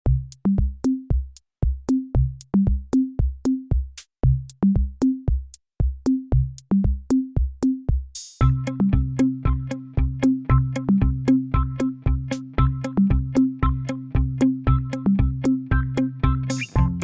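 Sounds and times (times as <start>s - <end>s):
bass line: 0.0s - 1.1s, 1.9s - 3.2s, 4.2s - 5.2s, 8.4s - 17.0s
drum machine beat: 0.0s - 17.0s.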